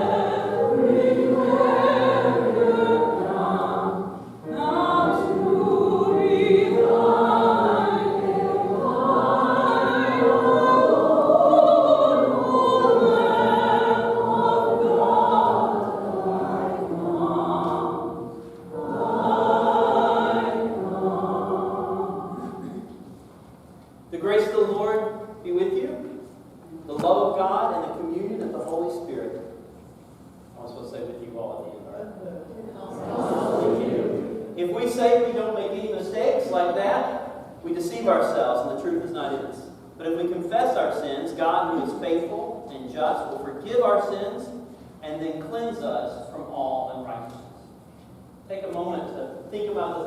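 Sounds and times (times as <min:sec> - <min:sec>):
choir singing: 0:00.0 - 0:22.9, 0:32.7 - 0:34.9.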